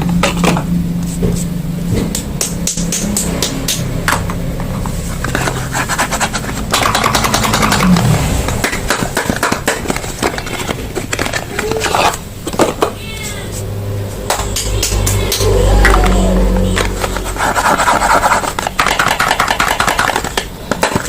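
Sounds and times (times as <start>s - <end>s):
crinkling of wrappers and boxes: 7.8s - 12.9s
steady low hum: 12.1s - 19.4s.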